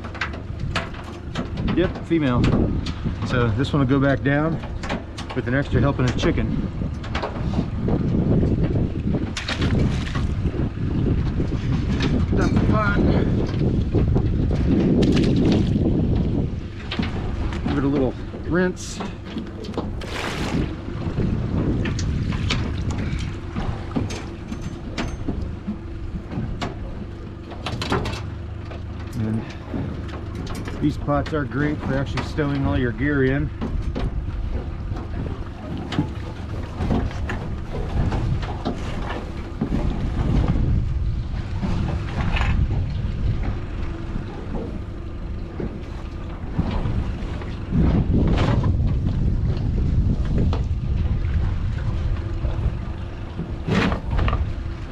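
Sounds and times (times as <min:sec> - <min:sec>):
knocks and clatter of gear: 0:00.0 - 0:03.0, 0:21.8 - 0:30.9
steady low rumble: 0:00.0 - 0:27.6, 0:39.3 - 0:54.9
wind buffeting microphone: 0:00.0 - 0:54.9.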